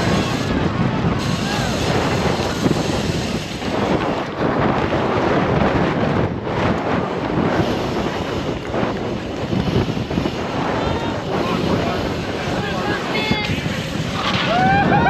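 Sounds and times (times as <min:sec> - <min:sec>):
wind buffeting microphone: 0:00.0 - 0:15.0
people yelling: 0:01.3 - 0:02.0, 0:14.2 - 0:15.0.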